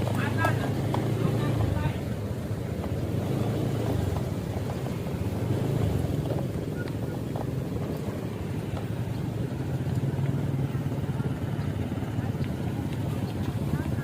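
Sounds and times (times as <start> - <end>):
engine running with low rumble: 0.0 - 14.0.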